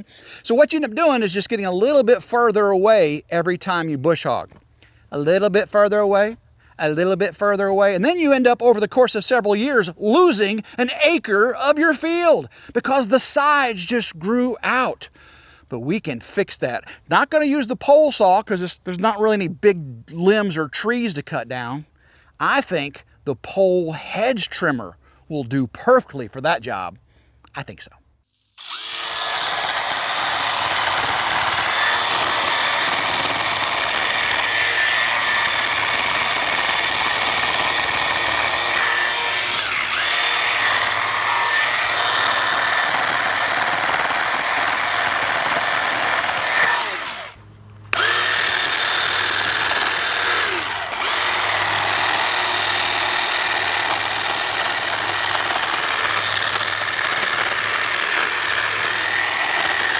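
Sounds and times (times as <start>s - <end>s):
electric hedge trimmer whining: 0.0s - 3.2s, 28.3s - 59.9s.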